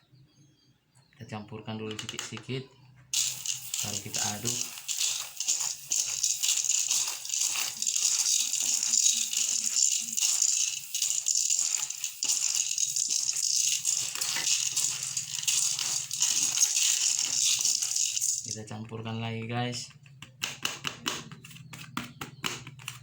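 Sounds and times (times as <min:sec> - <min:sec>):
feed grains stirred by hand: 0:03.2 - 0:18.7.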